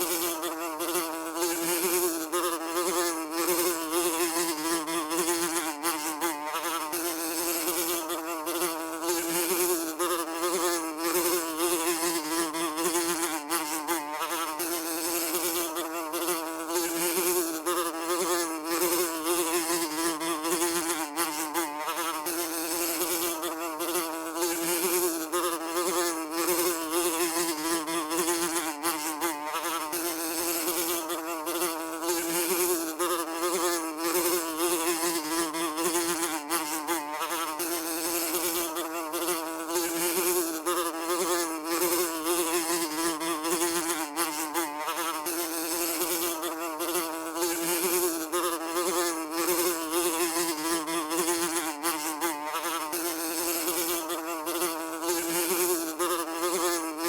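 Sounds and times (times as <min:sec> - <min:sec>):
fly buzzing: 0:00.0 - 0:57.0.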